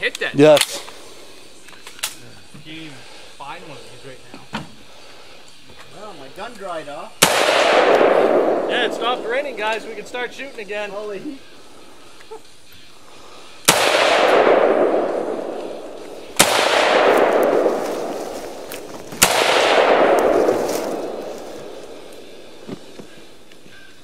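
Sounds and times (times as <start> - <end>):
rifle shots with echo: 7.2 - 10.1, 13.6 - 22.9.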